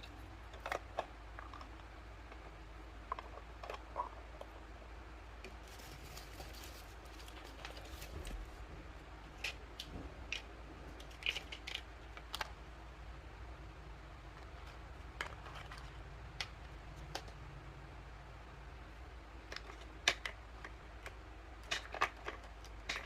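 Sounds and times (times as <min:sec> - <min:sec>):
plastic toy pieces rustling: 0:00.0 - 0:04.5, 0:05.5 - 0:08.6, 0:09.4 - 0:12.6, 0:14.3 - 0:17.4, 0:19.4 - 0:23.0.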